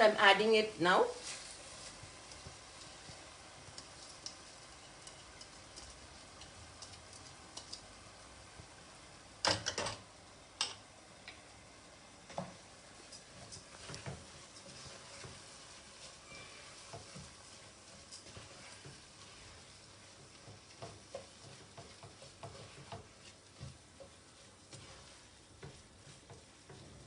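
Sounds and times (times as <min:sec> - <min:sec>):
faint sizzling: 0:00.0 - 0:27.0
utensil clicking against pot: 0:03.7 - 0:04.4, 0:05.0 - 0:08.0.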